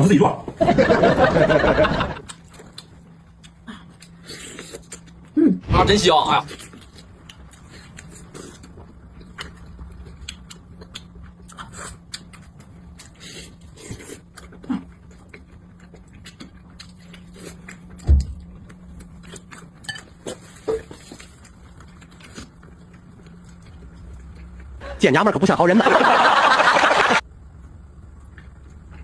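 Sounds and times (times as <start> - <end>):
low steady hum: 0.0 - 29.0
chewing: 2.2 - 5.4, 6.5 - 24.8.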